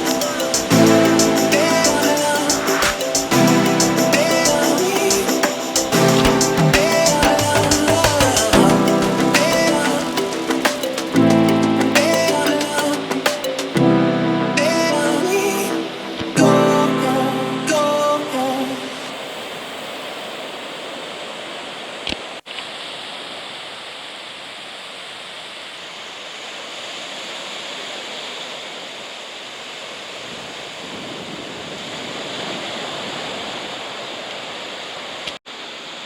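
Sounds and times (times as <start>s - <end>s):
ocean surf rushing: 0.0s - 24.0s.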